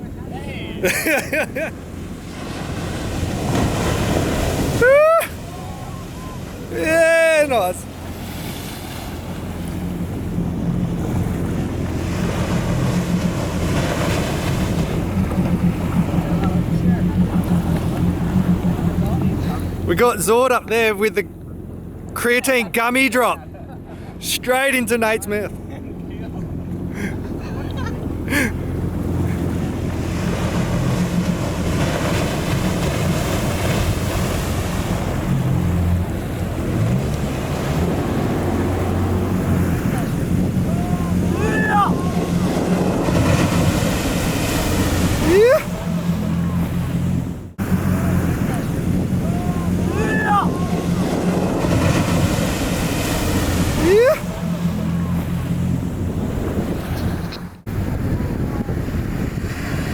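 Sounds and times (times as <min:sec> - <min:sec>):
boat engine idling: 0:00.0 - 0:59.9
sea noise: 0:00.0 - 0:59.9
surf and water rushing: 0:00.0 - 0:59.9
wind: 0:00.0 - 0:59.9
wind on microphone: 0:55.1 - 0:59.9.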